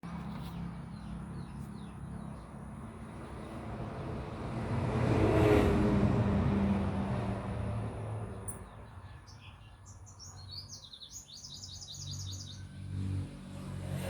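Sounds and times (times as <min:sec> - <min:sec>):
low engine hum: 0:00.0 - 0:09.0
motor vehicle passing: 0:00.0 - 0:09.0, 0:11.9 - 0:14.0.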